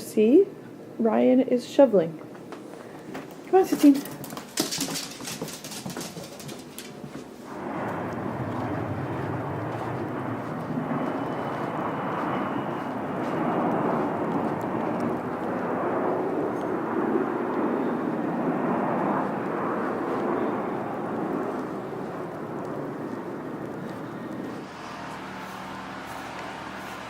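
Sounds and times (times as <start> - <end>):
rushing snowstorm wind: 7.3 - 27.0.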